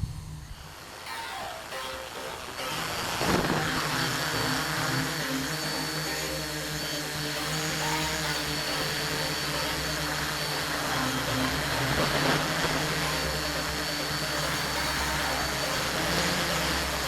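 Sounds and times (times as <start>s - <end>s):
wind noise: 0.0s - 0.9s
quadcopter motors buzzing: 0.0s - 17.0s.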